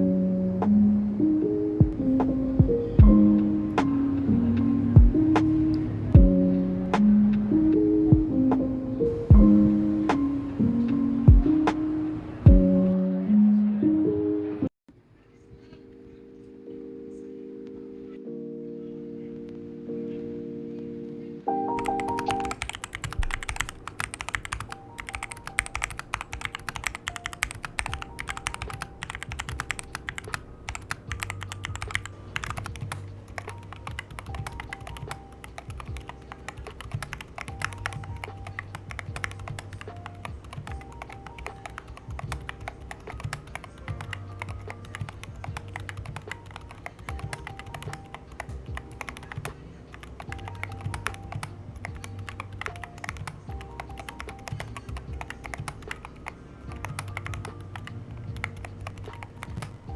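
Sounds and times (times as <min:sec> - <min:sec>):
background music: 0:00.0 - 0:59.9
fast typing on keyboard: 0:21.8 - 0:59.9.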